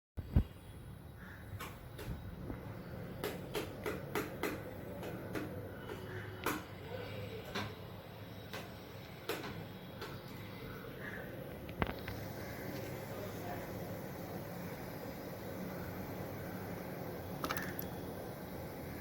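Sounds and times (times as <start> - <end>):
steady low hum: 0.2 - 19.0.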